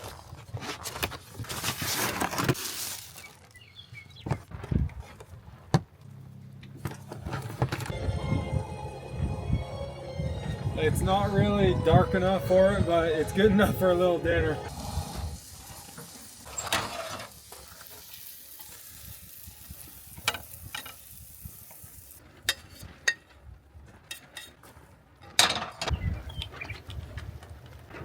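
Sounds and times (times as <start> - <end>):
steady hiss: 14.7 - 22.2.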